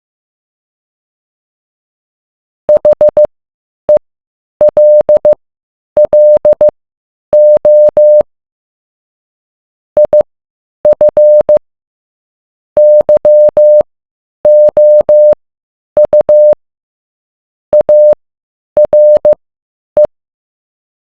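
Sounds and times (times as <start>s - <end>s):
morse code beeps: 2.7s - 3.3s, 4.6s - 5.4s, 6.0s - 6.7s, 7.4s - 8.2s, 10.0s - 10.2s, 10.9s - 11.6s, 12.8s - 13.8s, 14.5s - 15.4s, 16.0s - 16.6s, 17.8s - 18.2s, 18.8s - 19.4s.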